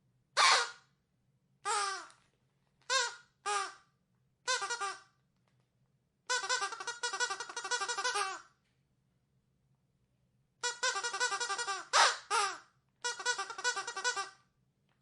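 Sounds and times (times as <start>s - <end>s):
squeaky dog toy squeaking: 0.4s - 0.8s, 1.6s - 2.2s, 2.9s - 3.8s, 4.5s - 5.1s, 6.3s - 8.5s, 10.6s - 14.4s.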